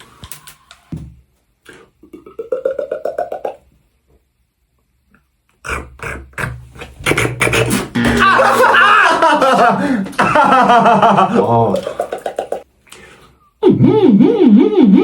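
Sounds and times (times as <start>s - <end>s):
beatboxed clicks: 1.6s - 3.7s, 5.1s - 8.0s
beatboxer pulsing croak: 1.7s - 3.7s, 5.5s - 8.3s, 13.6s - 15.0s
beatboxed kick-drum beats: 5.7s - 8.2s.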